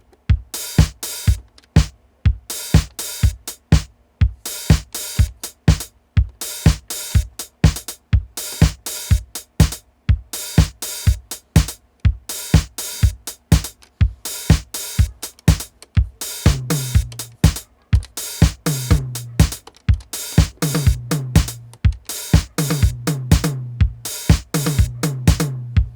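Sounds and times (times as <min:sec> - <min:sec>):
hi-hat and snare hits: 0:00.0 - 0:25.9
bass drum: 0:00.2 - 0:25.9
low pitched drum tone: 0:14.5 - 0:25.9.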